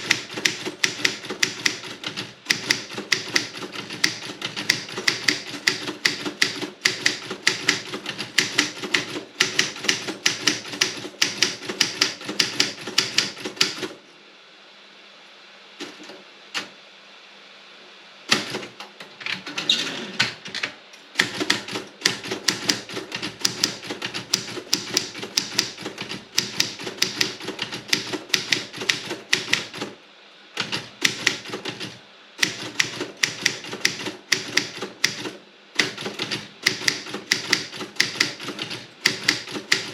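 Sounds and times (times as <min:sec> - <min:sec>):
typewriter key strikes: 0:00.0 - 0:13.9, 0:21.2 - 0:29.8, 0:30.6 - 0:39.9.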